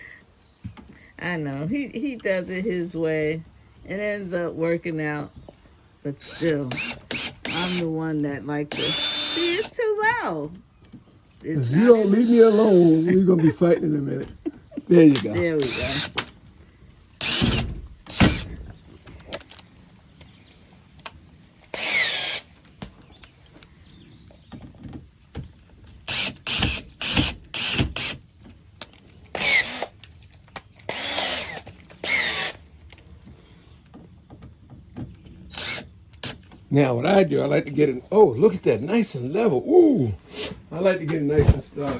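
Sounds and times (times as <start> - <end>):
power drill driving screws: 6.2 - 8.0, 8.7 - 9.8, 11.6 - 13.1, 15.1 - 16.3, 17.2 - 18.6, 21.7 - 22.6, 26.1 - 28.2, 29.3 - 30.0, 30.9 - 32.6, 35.5 - 36.5.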